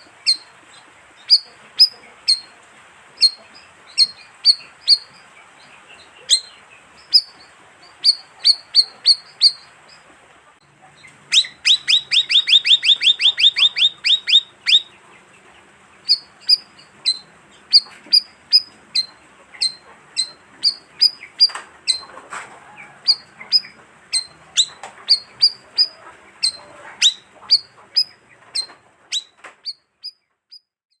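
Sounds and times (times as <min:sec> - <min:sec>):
bird lure call chirps: 0:11.3 - 0:14.9.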